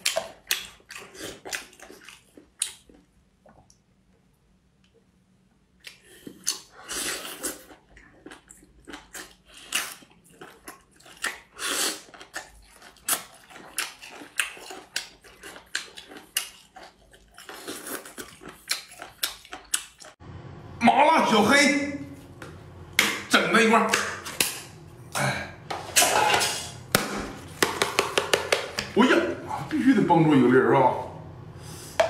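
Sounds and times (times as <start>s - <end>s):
person chewing and crunching food: 0.0s - 3.9s, 5.8s - 20.2s.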